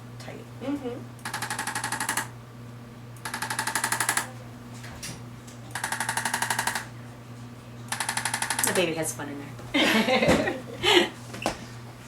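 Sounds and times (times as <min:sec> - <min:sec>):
electric instrument rapid tapping: 0:07.9 - 0:08.9.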